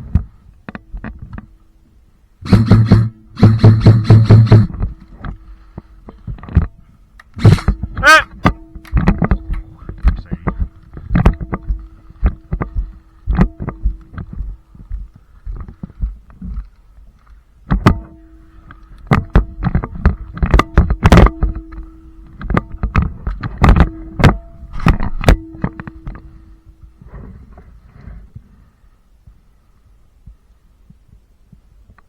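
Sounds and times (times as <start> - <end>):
steady hum: 0.0 - 31.4
knocks and thumps of gear: 2.5 - 26.3.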